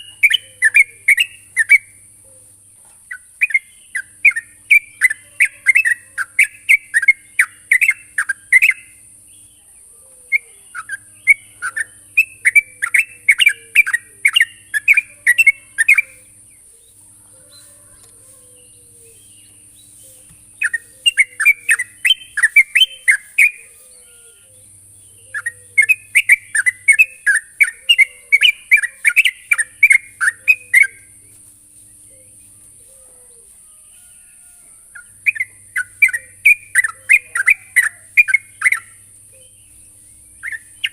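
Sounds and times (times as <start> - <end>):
bulbul singing bubbling chirps: 0.0 - 2.0, 10.3 - 16.4, 19.3 - 23.6, 24.6 - 31.1.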